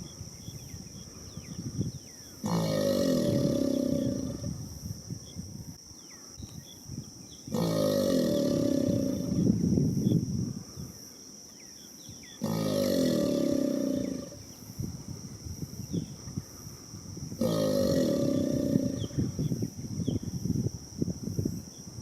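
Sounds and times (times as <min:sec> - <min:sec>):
alligators bellowing: 0:02.4 - 0:04.5, 0:07.5 - 0:09.4, 0:12.4 - 0:14.4, 0:17.4 - 0:19.2.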